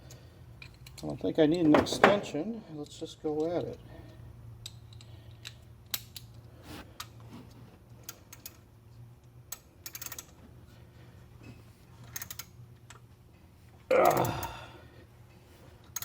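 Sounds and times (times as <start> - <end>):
hand ratchet clicking: 9.5 - 10.3, 12.0 - 12.5.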